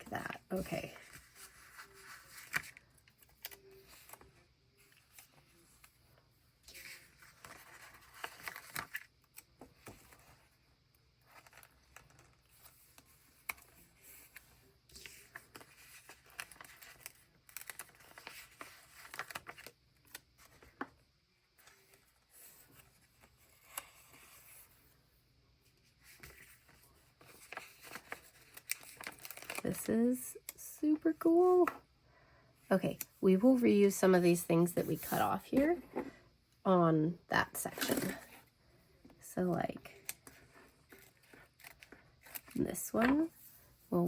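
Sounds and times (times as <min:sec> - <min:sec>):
paper stickers rustling and peeling: 0:00.0 - 0:06.0, 0:06.7 - 0:10.5, 0:11.2 - 0:20.9, 0:25.9 - 0:30.2, 0:39.8 - 0:43.3.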